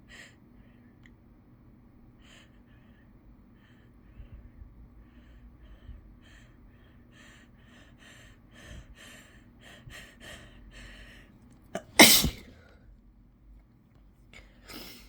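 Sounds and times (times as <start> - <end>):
person sneezing: 11.8 - 12.6.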